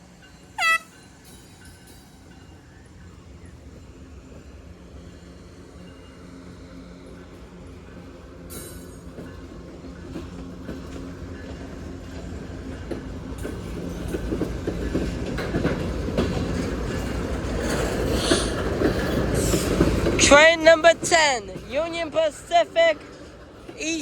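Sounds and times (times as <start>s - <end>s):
freight train passing: 0.0s - 24.0s
wheels clacking over rail joints: 8.5s - 24.0s.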